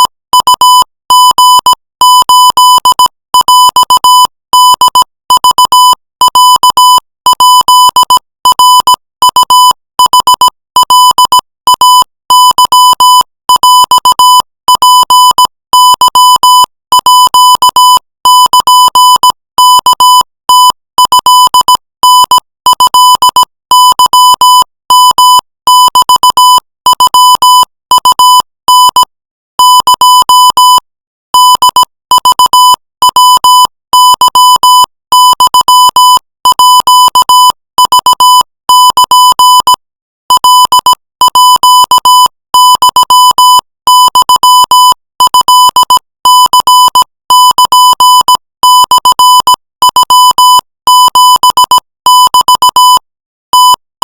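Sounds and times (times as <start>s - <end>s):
morse code beeps: 42.7s - 46.0s, 51.0s - 53.0s.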